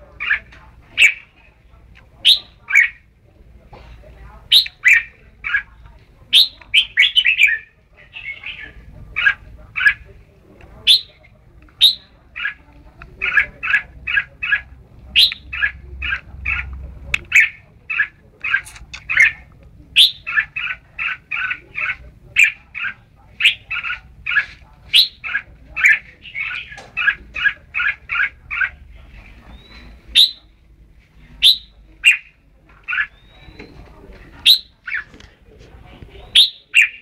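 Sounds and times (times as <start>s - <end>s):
bird chirping song: 2.2s - 3.0s, 10.8s - 12.6s, 13.2s - 19.4s, 20.0s - 30.5s, 31.4s - 35.2s, 36.2s - 37.0s.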